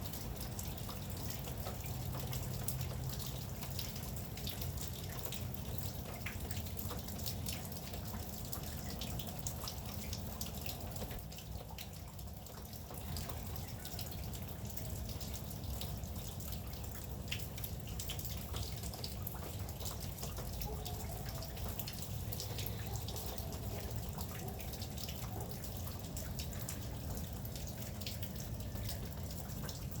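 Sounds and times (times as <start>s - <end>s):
steady rain with dripping: 0.0s - 30.0s.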